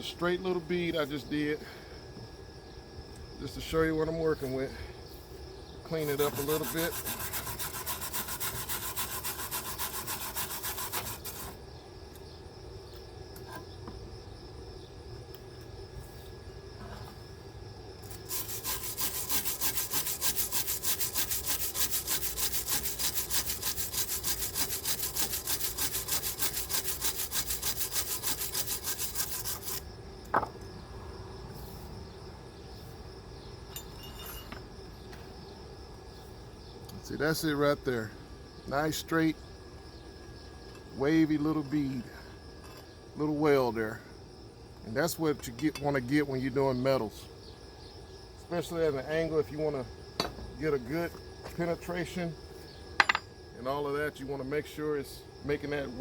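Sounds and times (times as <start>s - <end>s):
crickets chirping: 0.0s - 56.0s
wire brush scrubbing metal: 5.9s - 11.6s, 18.0s - 29.8s.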